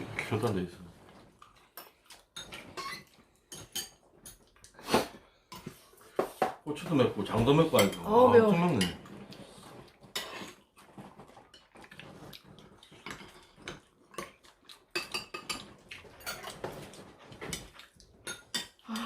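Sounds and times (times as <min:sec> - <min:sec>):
cutlery clinking on dishes: 0:01.7 - 0:04.5, 0:05.5 - 0:09.2, 0:10.0 - 0:11.7, 0:12.8 - 0:19.0.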